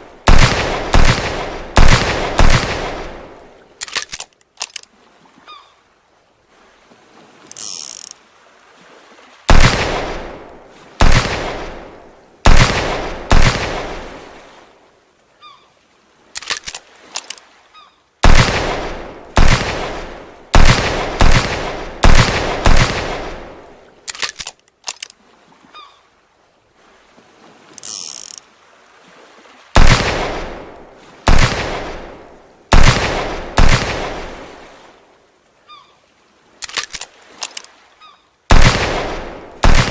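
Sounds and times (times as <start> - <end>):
revolver gunshots with echo: 0.3 - 3.3, 9.5 - 10.4, 11.0 - 14.0, 18.2 - 23.6, 29.8 - 30.7, 31.3 - 34.4, 38.5 - 39.9
hammer cocking clicks: 3.8 - 4.9, 16.4 - 17.4, 24.1 - 25.1, 36.6 - 37.7.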